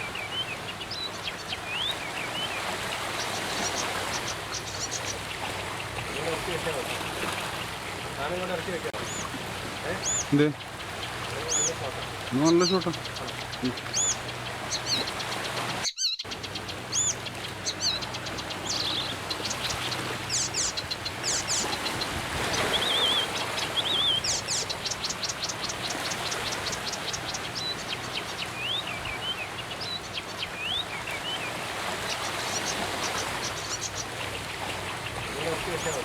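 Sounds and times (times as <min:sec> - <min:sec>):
wild birds singing and calling: 0:00.0 - 0:36.0.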